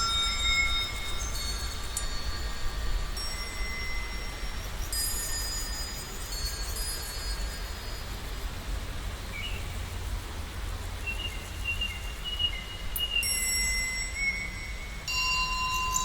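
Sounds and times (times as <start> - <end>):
high whistle-like tones: 0.0 - 4.3, 13.0 - 16.0
chime-like tones: 0.0 - 8.1, 13.2 - 16.0
faint hiss: 0.0 - 16.0.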